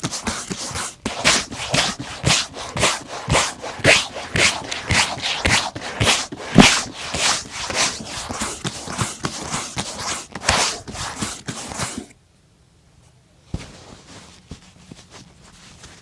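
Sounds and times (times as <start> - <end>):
brush rubbing leather boot: 0.0 - 12.1.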